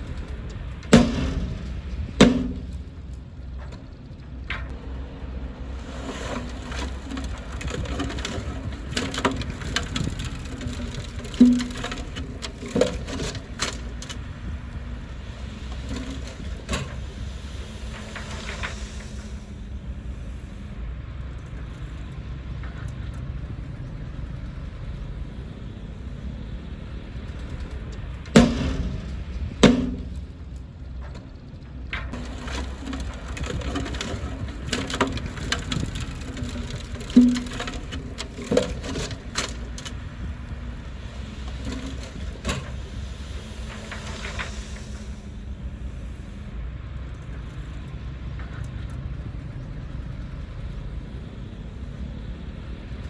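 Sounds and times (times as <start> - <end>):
bulldozer diesel engine running: 0.0 - 53.0
loud knocks: 0.9 - 3.1, 28.4 - 30.4.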